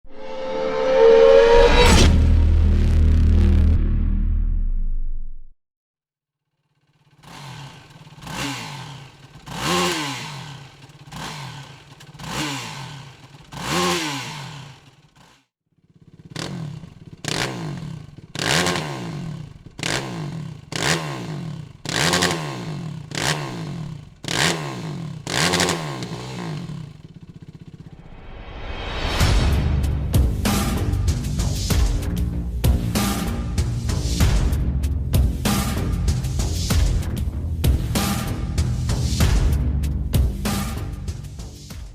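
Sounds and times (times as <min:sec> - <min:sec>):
quad engine idling and revving: 0:06.6 - 0:28.1, 0:30.1 - 0:41.9.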